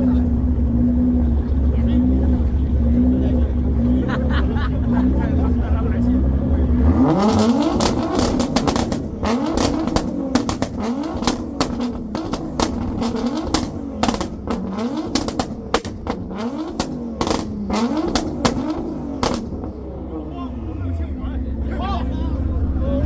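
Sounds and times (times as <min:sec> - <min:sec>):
car engine revving: 0:00.0 - 0:23.0
exhaust pops and bangs: 0:06.9 - 0:20.1.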